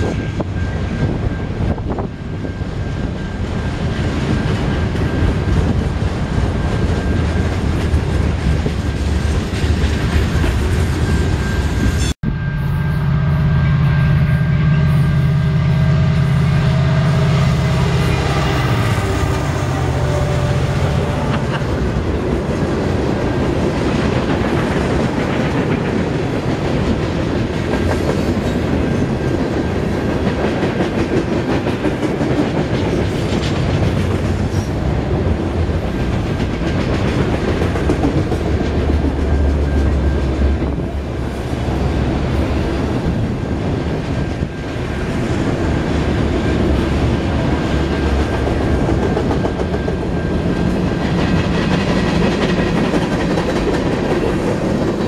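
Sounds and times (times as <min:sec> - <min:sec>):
freight train cars rolling: 0:00.0 - 0:55.0
train wheels clacking: 0:16.0 - 0:55.0.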